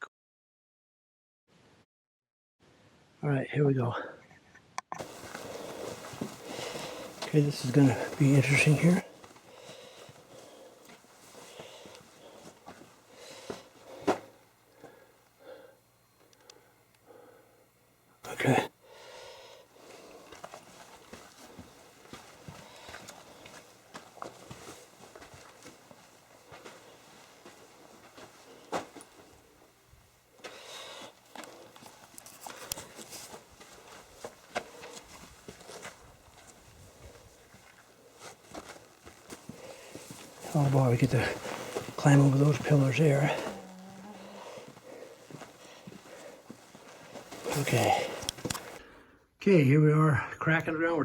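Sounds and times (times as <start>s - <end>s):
footsteps scuffing on rock: 5.0s - 15.0s, 19.8s - 29.4s, 30.4s - 48.8s.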